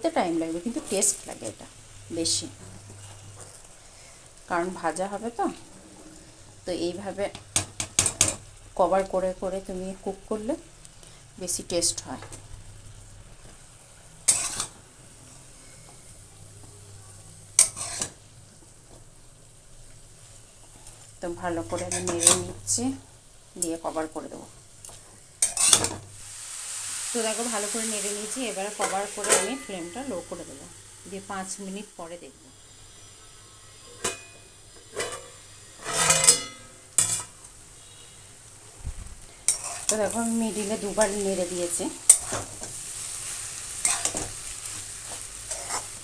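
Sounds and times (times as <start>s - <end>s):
metal spatula scraping a pan: 14.3s - 14.8s, 17.6s - 18.2s, 20.8s - 22.8s, 25.4s - 26.0s, 27.3s - 30.4s, 33.6s - 38.2s, 39.4s - 46.0s
metal cookware clanking on a pan: 21.6s - 22.6s, 25.4s - 26.0s, 28.8s - 30.0s, 33.9s - 37.4s.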